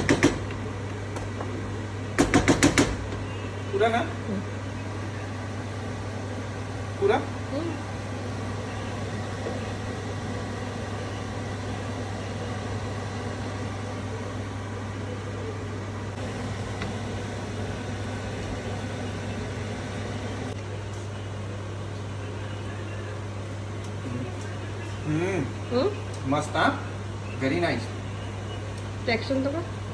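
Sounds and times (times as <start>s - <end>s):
low mechanical hum: 0.0s - 29.9s.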